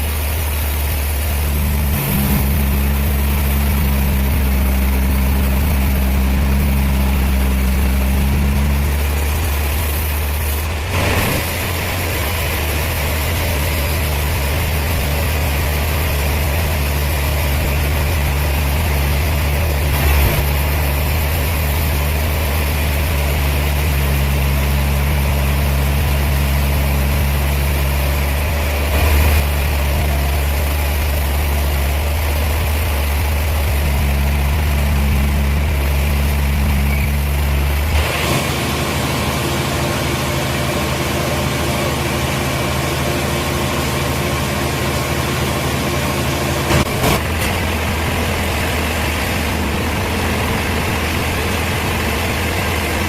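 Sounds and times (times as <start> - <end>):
heavy engine running: 0.0 - 53.0.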